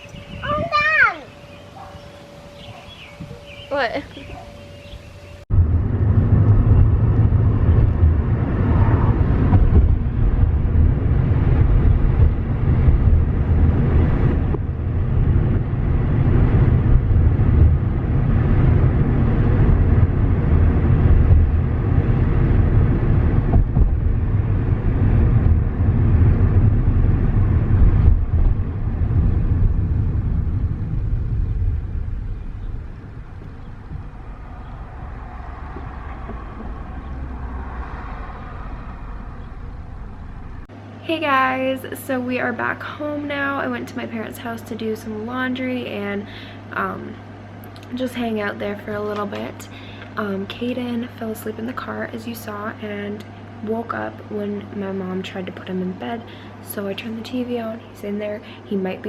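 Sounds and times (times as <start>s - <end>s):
car driving from inside: 4.1s - 40.7s.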